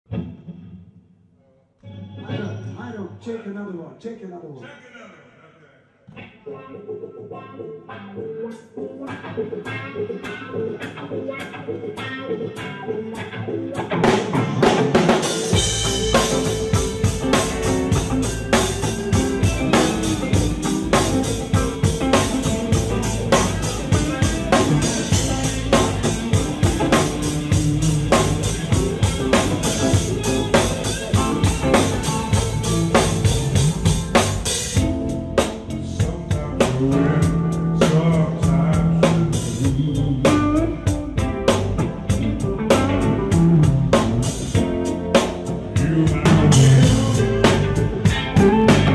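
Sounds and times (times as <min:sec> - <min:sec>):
electric guitar: 0:00.1 - 0:01.0, 0:06.1 - 0:48.9
bass guitar: 0:01.8 - 0:02.9, 0:06.1 - 0:48.9
drum kit kick and snare: 0:14.1 - 0:48.9.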